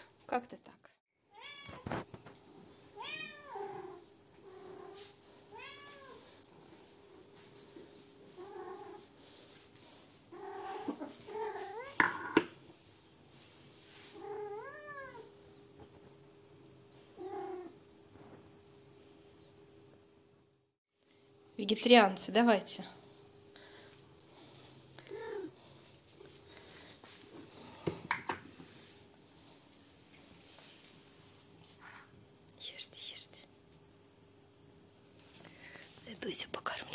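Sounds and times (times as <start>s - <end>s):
cat meowing: 3.0s - 4.0s, 4.7s - 6.2s.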